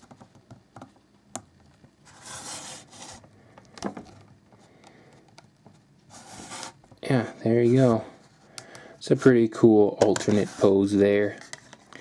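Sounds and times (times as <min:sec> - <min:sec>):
plastic scraping rub: 0:06.1 - 0:06.8.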